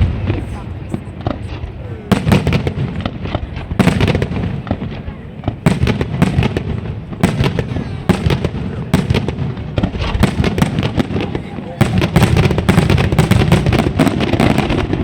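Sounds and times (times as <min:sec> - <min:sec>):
fireworks bangs and cracks: 0:00.0 - 0:15.0
rumbling echo: 0:00.0 - 0:15.0.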